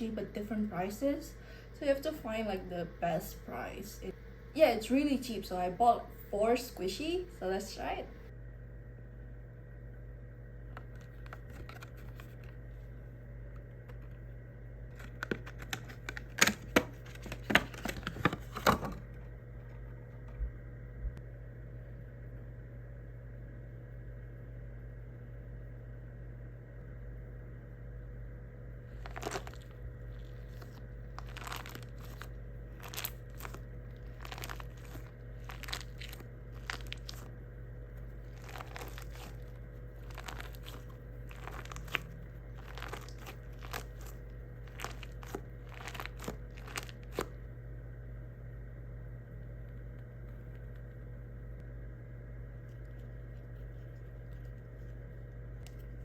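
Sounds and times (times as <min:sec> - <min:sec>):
steady low hum: 0:00.0 - 0:56.0
squishy toys crinkling: 0:14.9 - 0:18.7, 0:28.9 - 0:37.3, 0:38.0 - 0:47.4.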